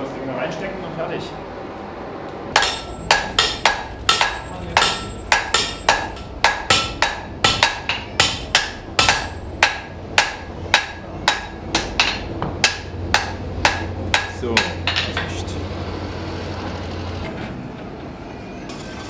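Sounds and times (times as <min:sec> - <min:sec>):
hammer striking iron on anvil: 0:02.5 - 0:15.4.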